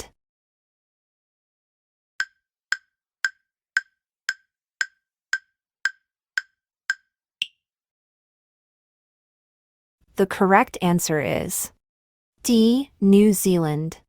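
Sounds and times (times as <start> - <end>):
countdown timer ticks: 2.2 - 7.6.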